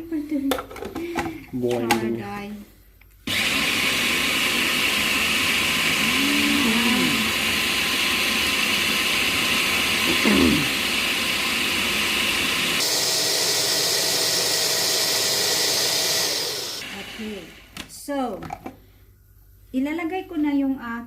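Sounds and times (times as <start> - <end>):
electric blender running: 3.3 - 17.9.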